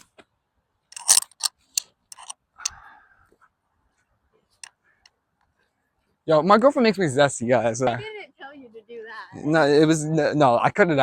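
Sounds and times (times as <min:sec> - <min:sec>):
sharp clicks and knocks: 0:00.9 - 0:02.4.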